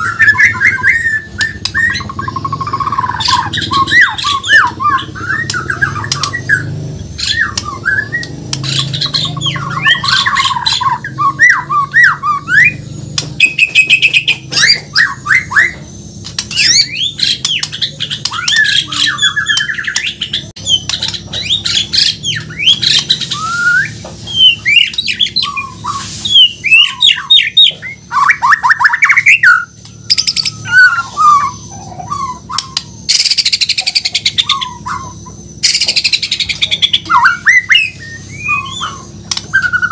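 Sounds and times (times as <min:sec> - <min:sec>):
songbird singing trills and whistles: 0:00.0 - 0:39.9.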